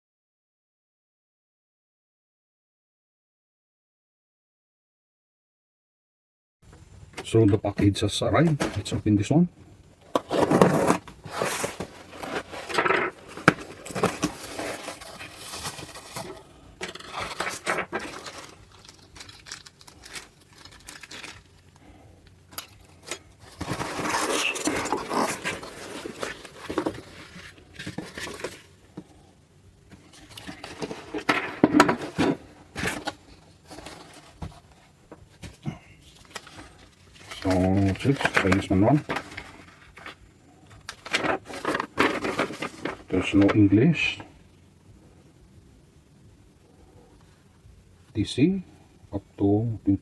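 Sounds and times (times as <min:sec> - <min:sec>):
packaging rustling and crinkling: 0:10.1 - 0:21.6, 0:23.0 - 0:28.7, 0:30.1 - 0:43.4.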